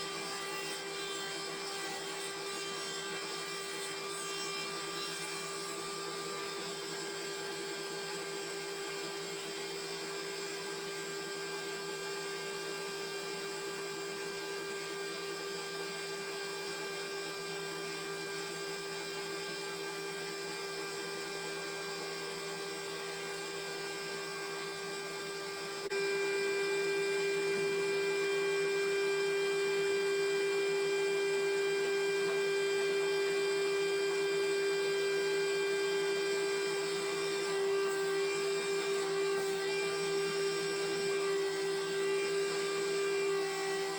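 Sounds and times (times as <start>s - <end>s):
sawmill machinery humming: 0.0s - 11.1s, 22.0s - 43.9s.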